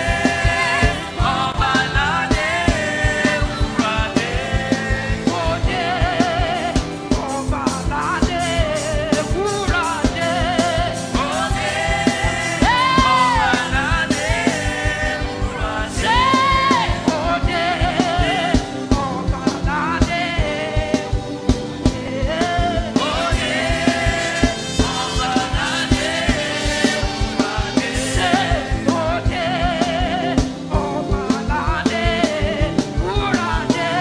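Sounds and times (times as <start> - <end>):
band with steady drum beat: 0.0 - 34.0
person singing with vibrato: 0.0 - 34.0.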